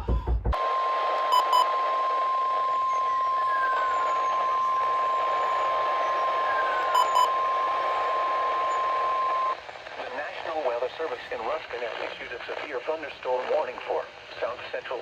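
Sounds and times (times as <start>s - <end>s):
long steady high alarm tone: 0.6s - 9.6s
short beeps: 0.6s - 9.6s
radio hiss: 0.6s - 15.0s.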